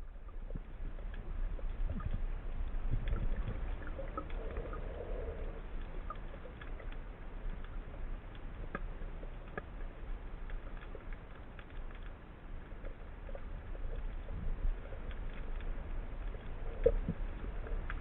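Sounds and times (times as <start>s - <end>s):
bubbling gurgle: 0.0s - 8.1s, 12.7s - 18.0s
faint clicks and crackles: 0.0s - 18.0s
low rumble of moving water: 0.0s - 18.0s.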